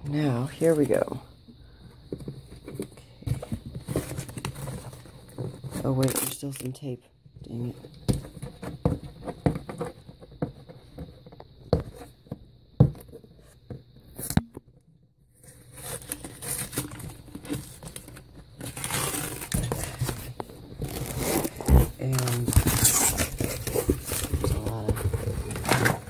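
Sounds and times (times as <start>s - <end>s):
paper and cardboard rustling: 2.1s - 6.7s, 15.4s - 26.0s
packing tape pulled off: 15.7s - 24.3s.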